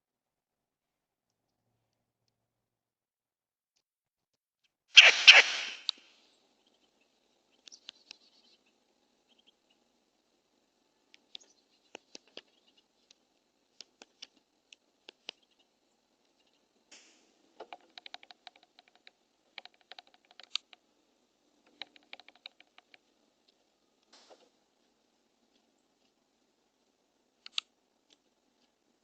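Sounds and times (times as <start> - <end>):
light clicks and taps: 11.1 - 20.8, 21.6 - 26.2.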